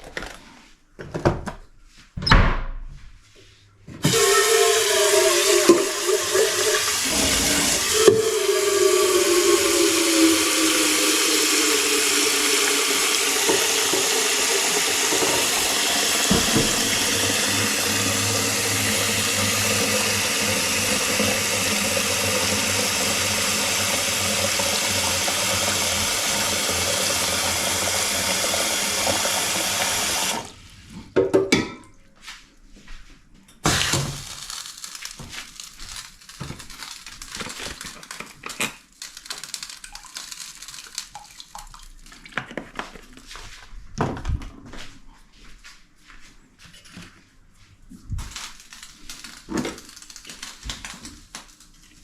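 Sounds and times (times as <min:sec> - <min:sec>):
water running from tap: 0:04.0 - 0:30.6, 0:33.7 - 0:42.3, 0:48.2 - 0:52.0.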